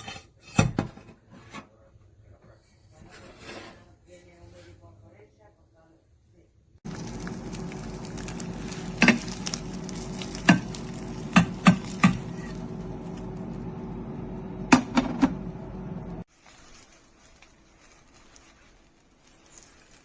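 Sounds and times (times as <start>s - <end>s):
utensil scraping a pan: 0.0s - 1.8s, 2.9s - 4.8s
food sizzling in a metal pan: 6.9s - 12.7s.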